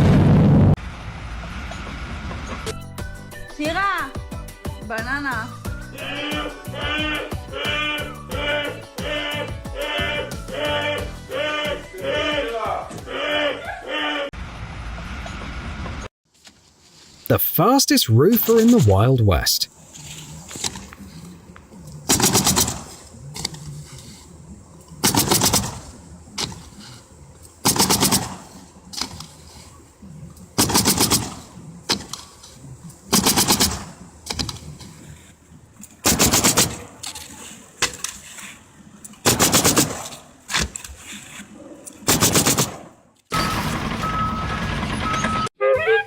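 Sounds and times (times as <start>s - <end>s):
pneumatic nailer rapid shots: 22.1s - 23.5s, 25.0s - 26.7s, 27.6s - 29.2s, 30.6s - 32.3s, 33.1s - 34.7s, 36.0s - 36.9s, 39.2s - 40.8s, 42.0s - 44.0s.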